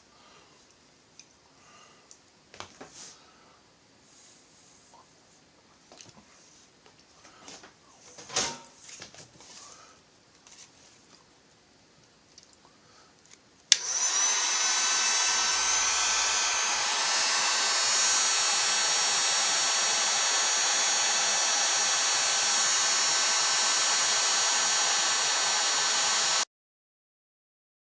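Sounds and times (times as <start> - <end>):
heat gun switch click: 13.7 - 14.3
heat gun fan whining: 13.7 - 26.5.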